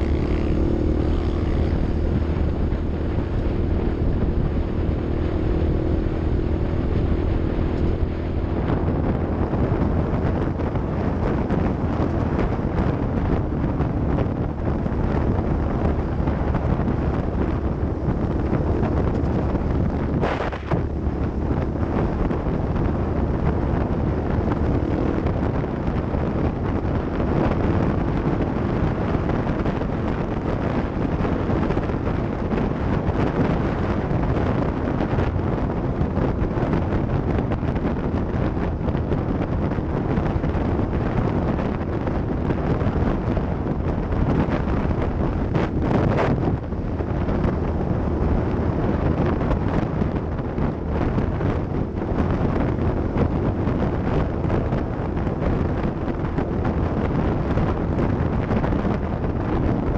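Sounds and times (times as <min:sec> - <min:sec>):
off-road vehicle engine hum: 0:00.0 - 0:59.9
wind buffeting microphone: 0:00.0 - 0:59.9.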